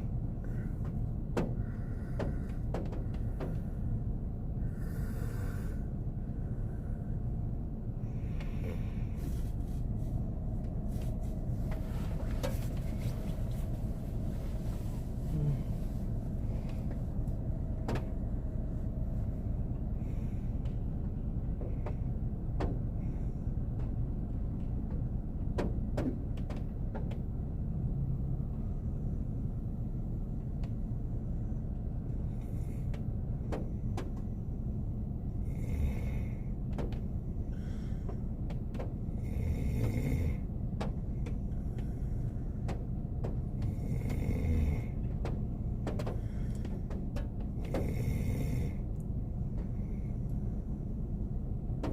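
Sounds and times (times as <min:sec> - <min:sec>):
low rumble inside car: 0:00.0 - 0:51.9
man snoring: 0:39.2 - 0:40.4, 0:43.7 - 0:45.0.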